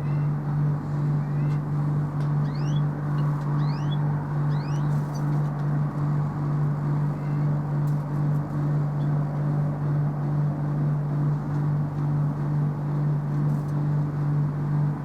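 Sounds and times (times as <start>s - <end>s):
low mechanical hum: 0.0s - 15.0s
small birds chirping: 2.4s - 5.4s.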